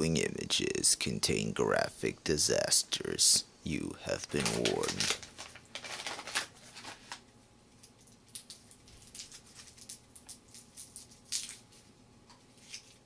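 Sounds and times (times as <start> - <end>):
wrapper crinkling: 4.3 - 13.0.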